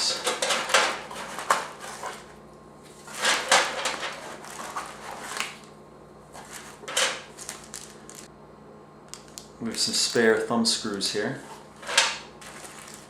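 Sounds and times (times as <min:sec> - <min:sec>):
plastic parts clattering: 0:00.0 - 0:02.2, 0:03.1 - 0:05.4, 0:06.9 - 0:08.3.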